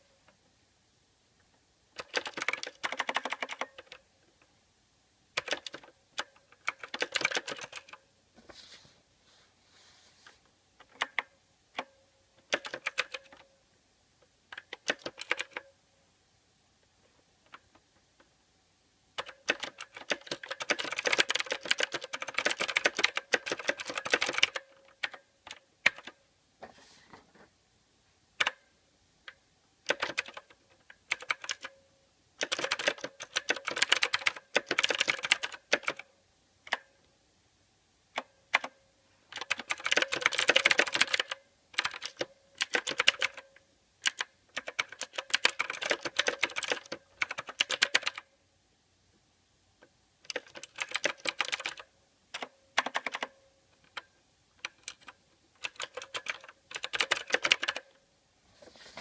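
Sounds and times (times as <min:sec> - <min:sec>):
mechanical keyboard key clicks: 0:02.0 - 0:04.0, 0:05.4 - 0:08.0, 0:12.5 - 0:13.5, 0:14.5 - 0:15.7, 0:19.2 - 0:26.2, 0:28.4 - 0:28.6, 0:29.8 - 0:31.8, 0:32.4 - 0:36.1, 0:38.2 - 0:48.3, 0:50.3 - 0:57.9.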